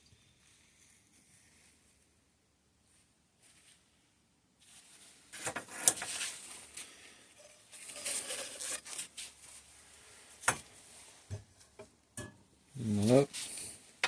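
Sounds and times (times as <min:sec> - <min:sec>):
rustling: 0:02.8 - 0:11.8.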